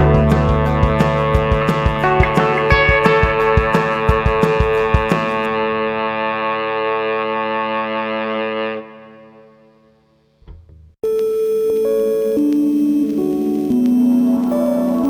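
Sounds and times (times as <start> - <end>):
drum beat: 0.0 - 5.5
distorted electric guitar: 0.0 - 7.3, 11.1 - 15.0.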